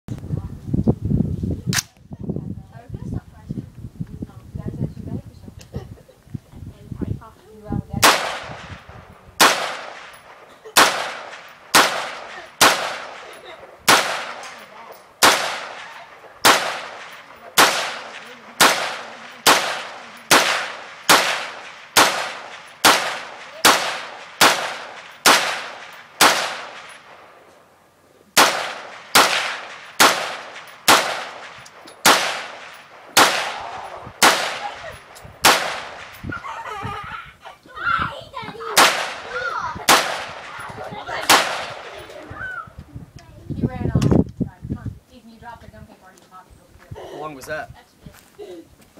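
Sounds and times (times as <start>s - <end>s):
rifle shots with echo: 8.0s - 27.6s, 28.4s - 36.3s, 38.7s - 42.3s.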